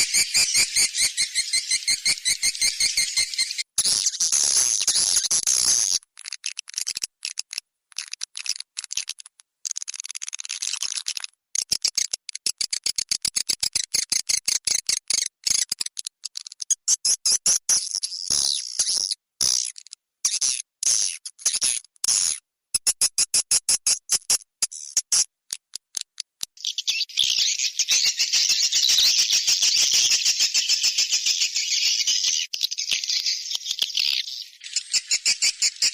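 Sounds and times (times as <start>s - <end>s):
swiftlet chirping call: 0.0s - 3.6s.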